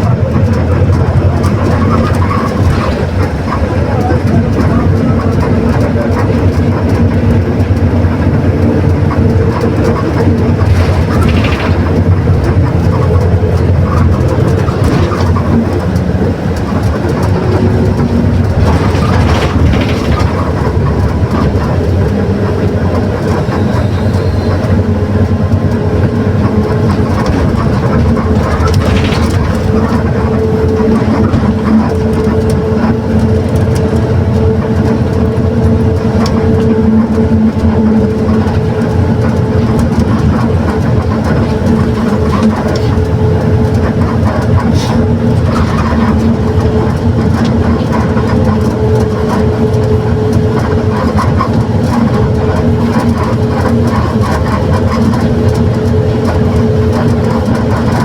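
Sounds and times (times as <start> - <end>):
bus drivetrain whine and rumble: 0.0 - 58.0
bus rattles: 0.0 - 58.0.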